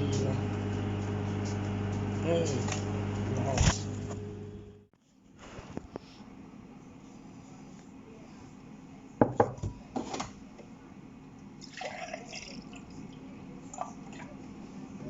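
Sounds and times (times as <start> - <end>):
low hum: 0.0 - 4.9
liquid splash: 11.6 - 13.0.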